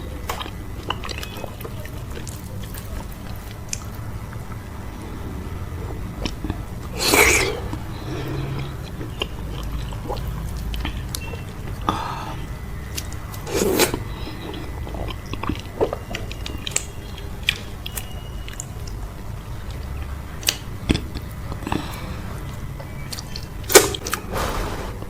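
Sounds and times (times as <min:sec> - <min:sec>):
close-miked chewing: 0:00.0 - 0:24.4
low steady hum: 0:00.0 - 0:25.0
wet mouth clicks and smacks: 0:15.1 - 0:19.0.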